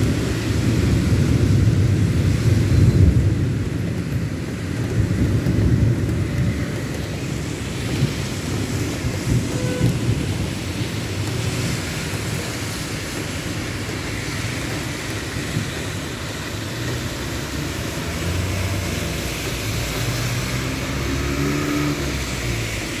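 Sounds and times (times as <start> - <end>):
light rain hissing: 0.0 - 23.0
vehicle engine passing: 17.0 - 23.0.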